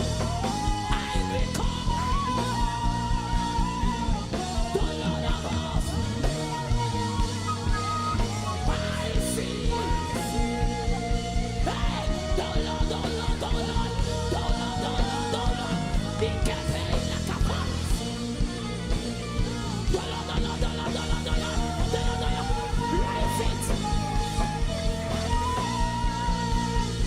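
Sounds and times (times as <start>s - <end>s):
live worship band music: 0.0s - 27.0s
person singing: 0.0s - 27.0s.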